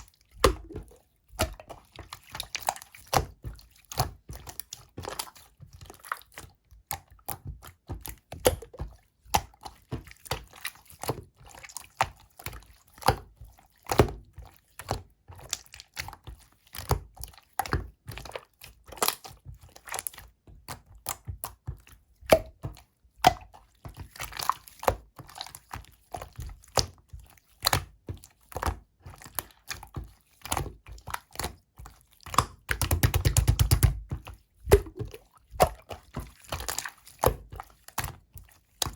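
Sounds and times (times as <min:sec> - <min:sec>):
slime squished by hand: 0:00.0 - 0:05.4, 0:30.4 - 0:38.2.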